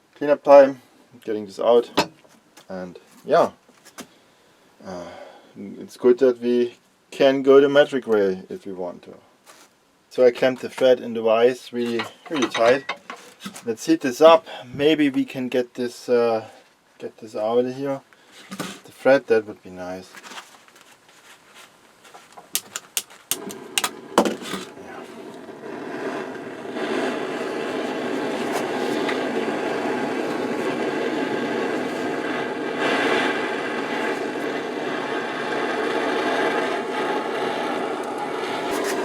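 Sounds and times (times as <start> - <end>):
gas torch hissing: 11.8 - 13.7, 22.5 - 39.0
sharp clicks: 22.6 - 24.0.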